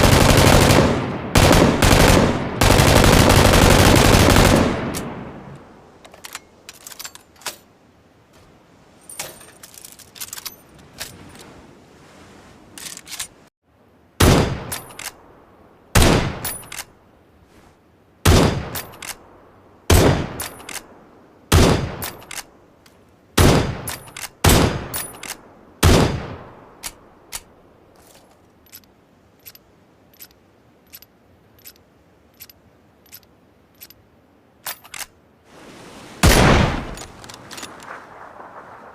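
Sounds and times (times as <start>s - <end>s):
gunshots: 0.0s - 5.3s, 14.2s - 14.8s, 16.0s - 16.4s, 18.2s - 18.8s, 21.5s - 22.3s, 23.4s - 26.5s, 36.2s - 38.9s.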